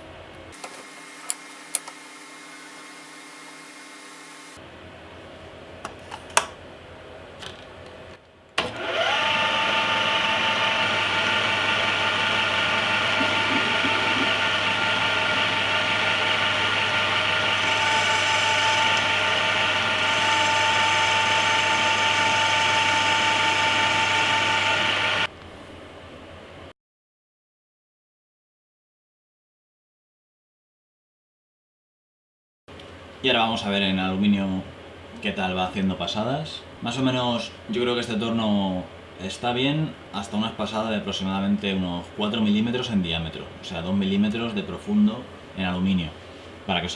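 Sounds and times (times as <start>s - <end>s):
lathe spindle motor whining: 8.6s - 25.4s.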